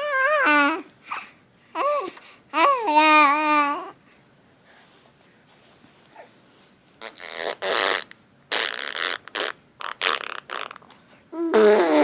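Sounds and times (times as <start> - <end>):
child making fart noises: 7.0 - 10.8, 11.4 - 12.0.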